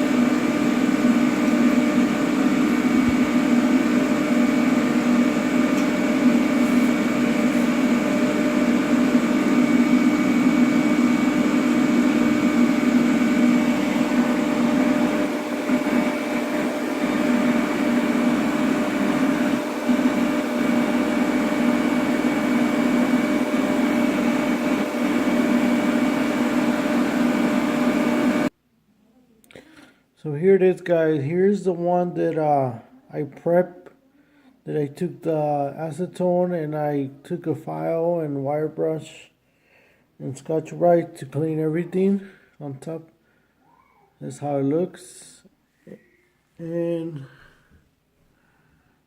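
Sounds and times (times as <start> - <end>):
welding arc buzzing hum: 0.0 - 28.5.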